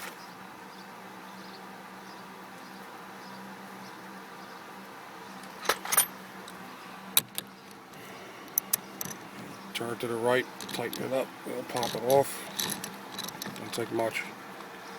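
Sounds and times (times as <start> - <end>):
steady low hum: 3.2 - 14.9
metal clinks of hand tools: 11.7 - 14.1.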